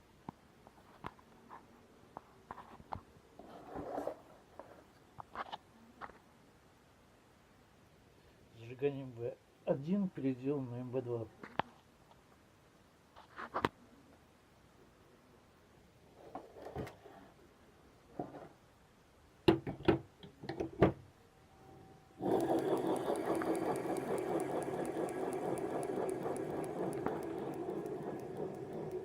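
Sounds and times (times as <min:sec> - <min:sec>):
boat motor clattering: 0:22.2 - 0:29.0.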